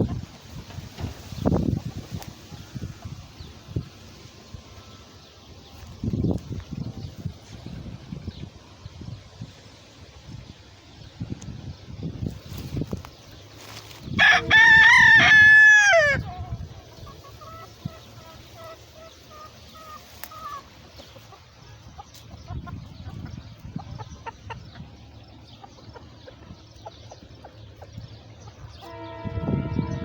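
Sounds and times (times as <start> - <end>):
hens clucking: 12.2 - 28.9
rooster crowing: 14.2 - 16.4.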